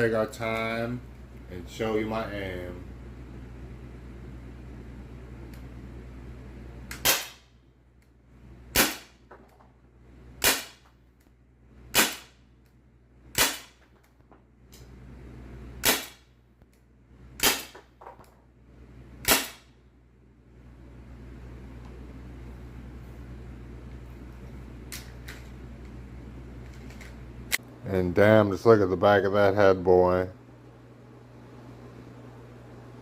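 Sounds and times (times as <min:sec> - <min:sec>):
airsoft gun shots: 0:07.0 - 0:07.5, 0:08.7 - 0:09.2, 0:10.4 - 0:10.9, 0:11.9 - 0:12.4, 0:13.4 - 0:13.8, 0:15.8 - 0:16.3, 0:17.4 - 0:17.8, 0:19.2 - 0:19.7.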